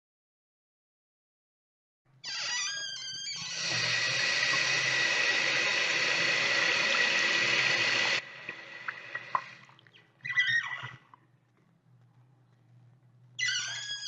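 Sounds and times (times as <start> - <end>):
faint drips: 3.4 - 12.8
tap running into sink: 3.6 - 9.6.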